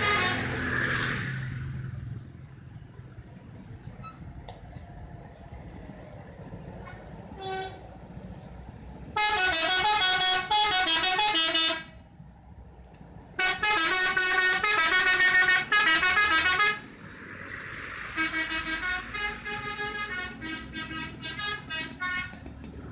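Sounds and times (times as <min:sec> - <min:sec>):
musical air horn melody: 0:07.4 - 0:07.8, 0:09.2 - 0:12.0, 0:13.4 - 0:16.8, 0:18.2 - 0:22.4.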